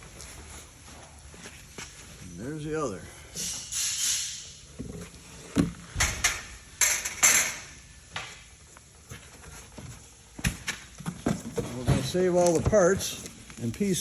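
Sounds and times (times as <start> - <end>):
clinks and knocks of parts: 5.9 - 8.5.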